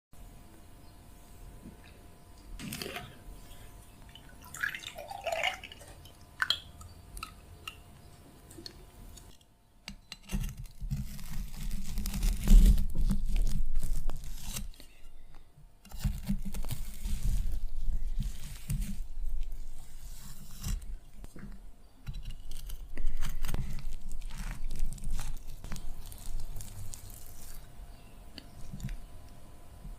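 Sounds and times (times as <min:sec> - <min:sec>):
wet chewing and crunching: 0:22.2 - 0:27.8.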